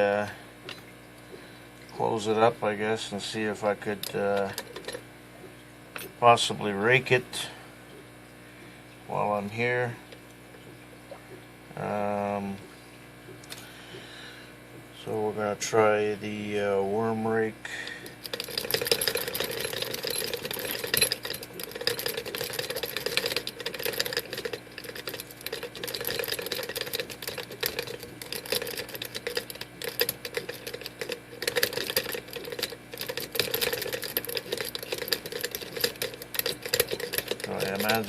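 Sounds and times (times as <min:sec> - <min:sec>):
lock rake clicking chatter: 0:18.0 - 0:38.0.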